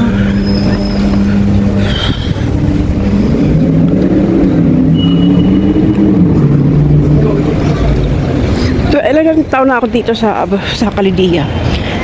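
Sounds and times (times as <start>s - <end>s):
high-pitched squeaks: 0.0s - 7.0s
car engines passing: 0.0s - 12.0s.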